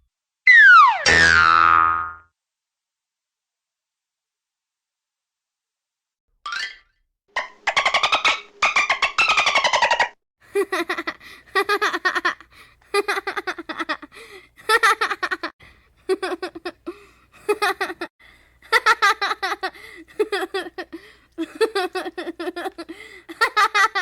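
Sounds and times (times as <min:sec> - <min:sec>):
child giggling: 0:10.5 - 0:15.5, 0:16.1 - 0:18.1, 0:18.7 - 0:24.0.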